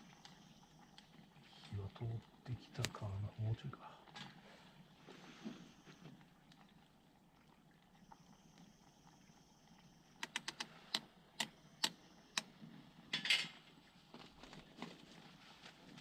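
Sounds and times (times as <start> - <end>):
campfire crackling: 0.0 - 16.0.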